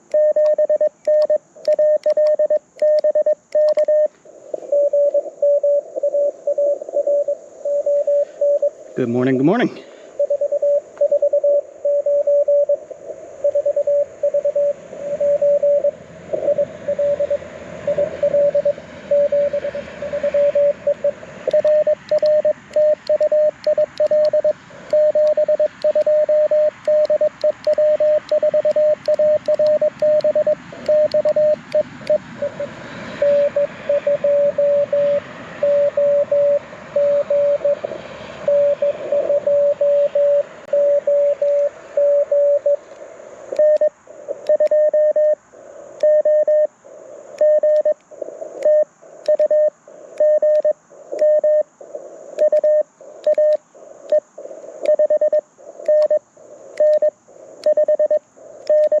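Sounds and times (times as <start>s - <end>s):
morse code beeps: 0.0s - 4.1s, 4.7s - 9.6s, 10.2s - 12.8s, 13.4s - 37.8s, 38.4s - 42.8s, 43.5s - 45.4s, 46.0s - 46.7s, 47.4s - 48.0s, 48.6s - 51.7s, 52.4s - 54.2s, 54.8s - 56.2s, 56.8s - 59.0s
faint radio band hiss: 0.0s - 59.0s.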